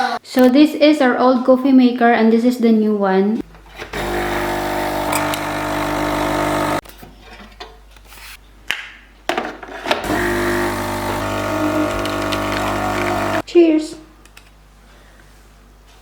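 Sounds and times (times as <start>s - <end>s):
clicks: 4.0s - 6.8s, 10.0s - 13.4s
coffee machine pump buzzing: 4.0s - 6.8s, 10.0s - 13.5s.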